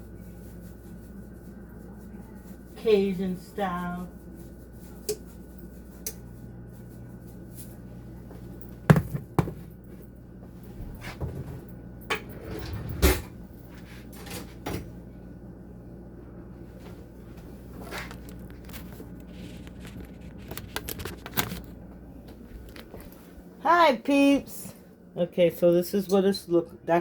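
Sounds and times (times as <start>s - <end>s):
steady low hum: 0.0s - 27.0s
kitchen items knocking: 8.9s - 9.6s.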